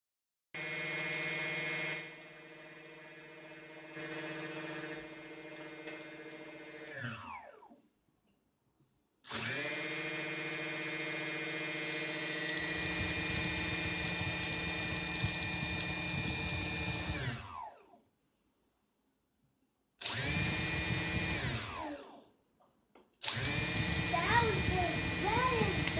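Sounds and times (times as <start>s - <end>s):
drone motors whining: 0.6s - 7.5s, 9.3s - 17.7s, 20.0s - 22.1s, 23.2s - 25.9s.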